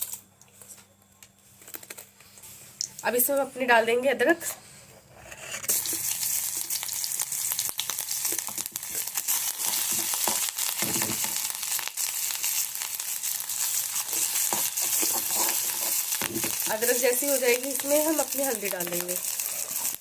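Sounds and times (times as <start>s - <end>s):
ginger sizzling in hot fat: 5.7s - 20.0s.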